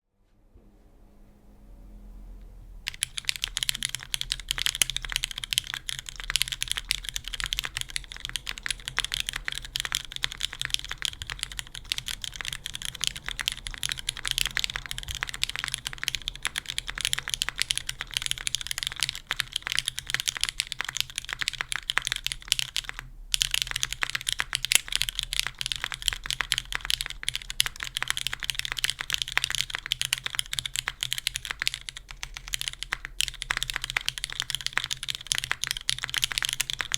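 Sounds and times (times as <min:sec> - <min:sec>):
fast typing on mechanical keyboard: 0:02.9 - 0:36.9.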